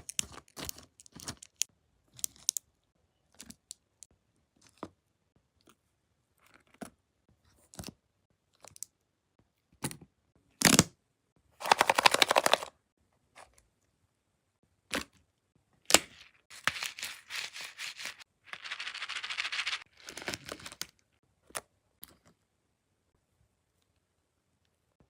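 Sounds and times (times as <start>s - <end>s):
crinkly rustling: 16.5s - 20.8s.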